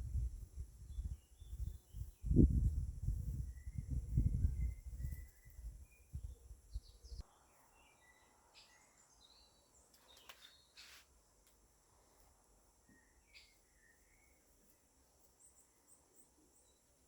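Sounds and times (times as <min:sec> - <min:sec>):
wind buffeting microphone: 0:00.0 - 0:07.2
faint bird chirps: 0:00.0 - 0:11.2, 0:12.6 - 0:17.0.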